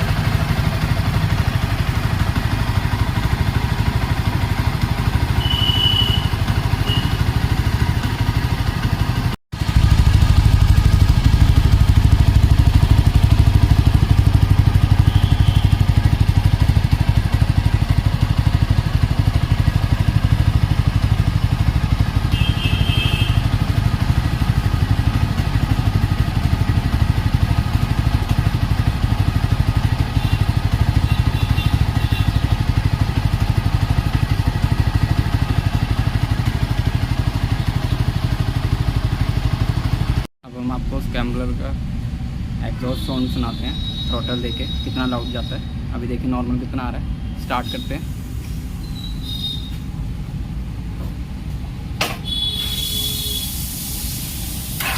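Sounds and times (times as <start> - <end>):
motorcycle engine idling: 0.0 - 53.6, 54.3 - 54.9.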